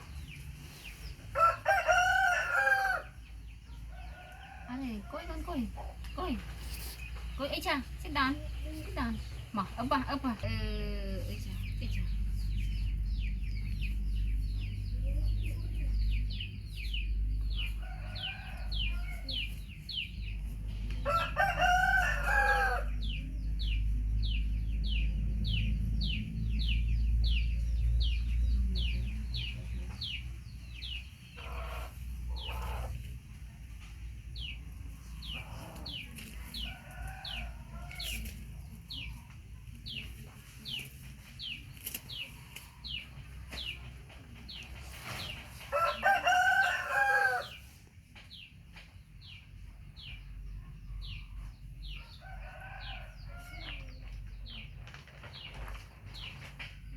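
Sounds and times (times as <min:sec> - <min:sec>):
rooster crowing: 0:01.4 - 0:03.2, 0:21.0 - 0:23.0, 0:45.7 - 0:47.6, 0:52.2 - 0:53.8
low rumble: 0:10.3 - 0:17.8
chicks peeping: 0:10.7 - 0:56.5.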